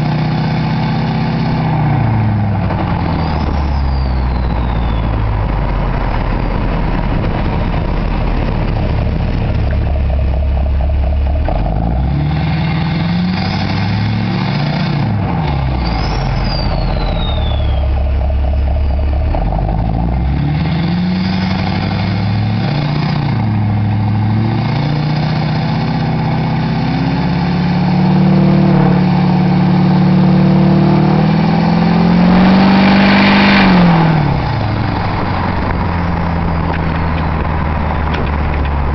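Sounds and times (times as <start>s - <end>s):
diesel truck engine accelerating: 0.0s - 38.9s
turbo whistle: 2.9s - 5.6s, 15.8s - 20.0s.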